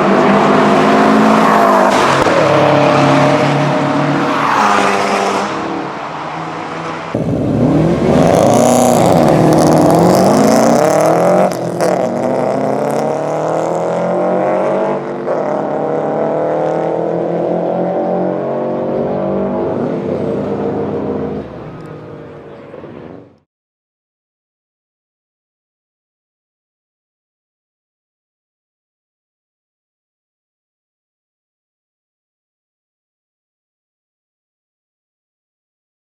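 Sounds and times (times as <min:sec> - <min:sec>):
car engine revving: 0:00.0 - 0:22.6.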